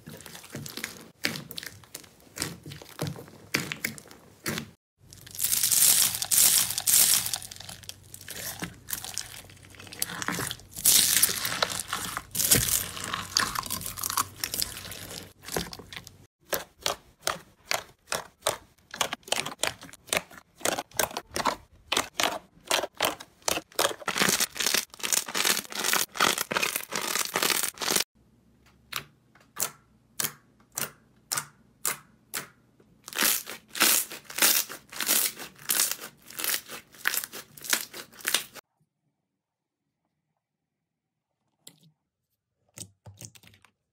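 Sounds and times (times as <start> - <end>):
slime crackling and popping: 5.1 - 15.6, 21.9 - 28.0.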